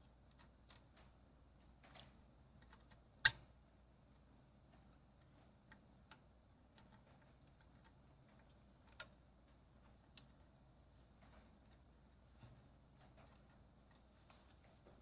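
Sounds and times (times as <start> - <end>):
small hardware clicking: 0.3 - 3.5, 5.7 - 9.2.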